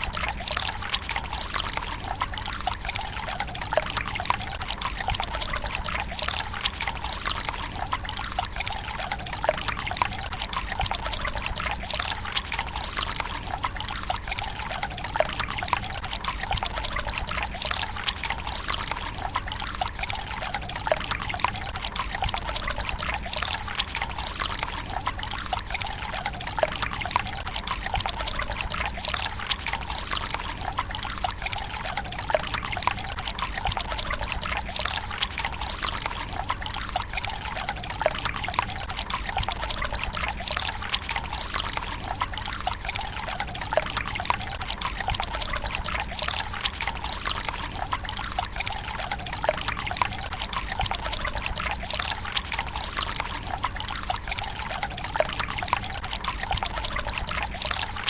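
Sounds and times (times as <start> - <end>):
water trickling into stone basin: 0.0 - 58.0.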